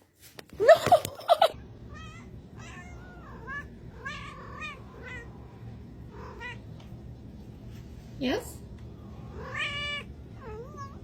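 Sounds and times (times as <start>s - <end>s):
cat mewing: 9.3s - 11.0s.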